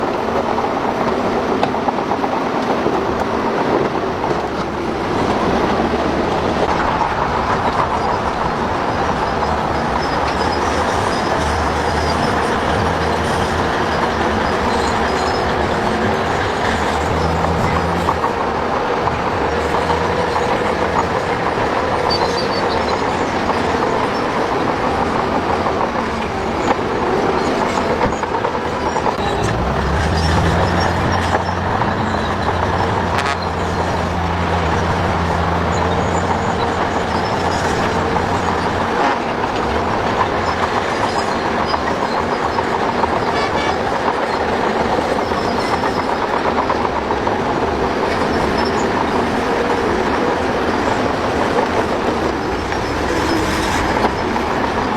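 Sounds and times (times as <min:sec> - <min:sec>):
metallic clanking of tracks: 0:00.0 - 0:54.9
diesel engine running: 0:04.6 - 0:24.2, 0:29.0 - 0:41.5
high squeals: 0:06.5 - 0:25.6, 0:28.8 - 0:44.4.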